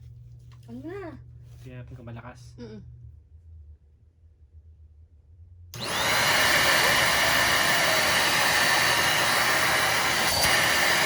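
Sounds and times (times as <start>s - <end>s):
vacuum cleaner whirring: 5.8s - 11.0s.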